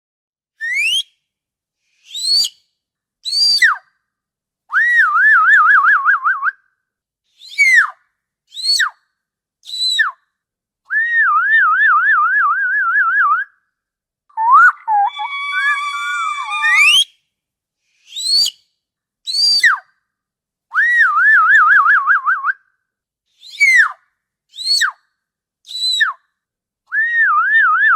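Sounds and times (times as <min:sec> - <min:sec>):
orca whistles and calls: 0:14.4 - 0:17.0.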